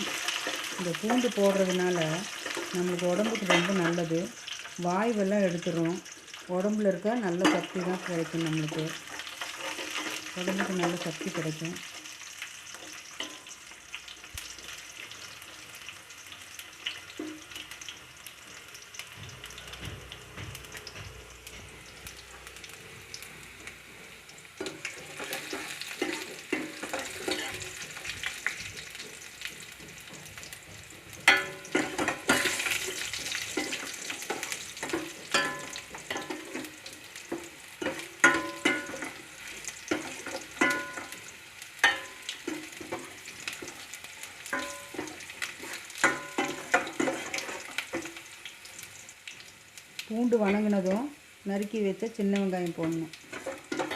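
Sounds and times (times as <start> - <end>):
garlic sizzling in oil: 0.0 - 53.9
utensil scraping a pan: 9.0 - 11.0, 19.5 - 48.3, 53.2 - 53.9.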